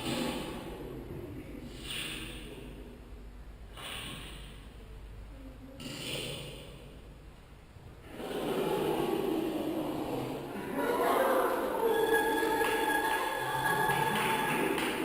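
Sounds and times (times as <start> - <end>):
heavy breathing: 0.0 - 3.0, 3.7 - 4.8.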